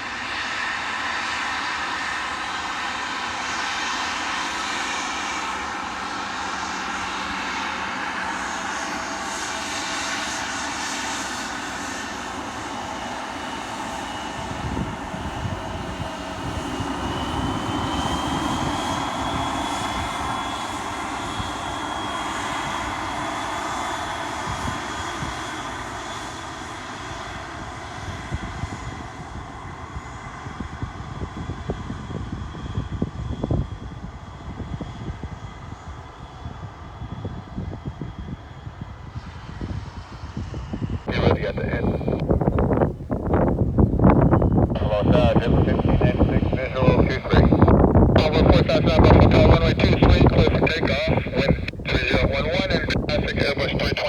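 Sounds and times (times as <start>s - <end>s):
airplane engines roaring: 0.0s - 54.0s
low buffeting: 41.0s - 54.0s
faint high whine: 41.1s - 42.2s, 44.3s - 54.0s.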